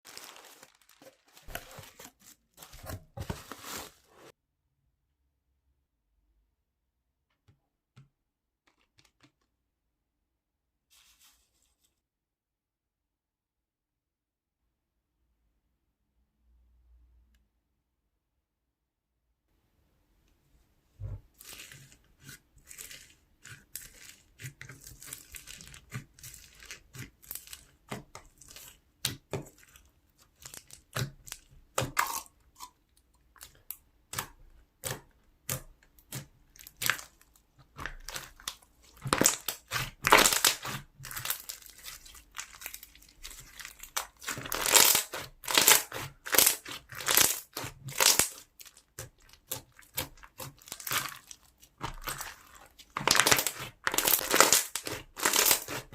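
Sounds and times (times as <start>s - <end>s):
slime crackling and popping: 33.4s - 55.9s.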